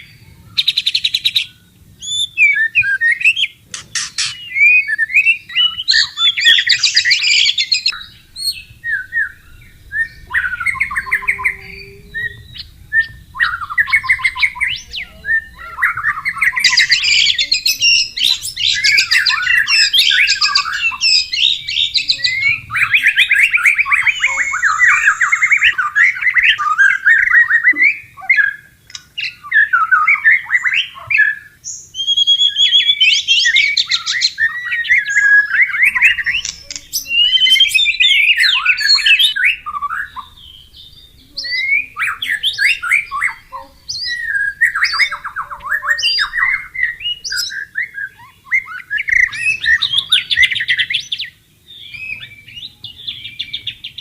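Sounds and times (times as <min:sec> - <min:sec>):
songbird singing trills: 0:00.0 - 0:54.0
faint flowing water: 0:05.8 - 0:31.0.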